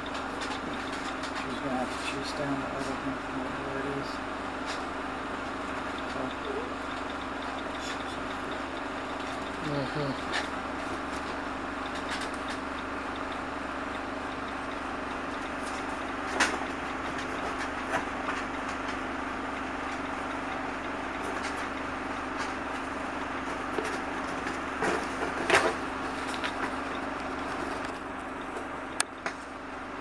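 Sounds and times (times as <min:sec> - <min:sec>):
low mechanical hum: 0:00.0 - 0:30.0.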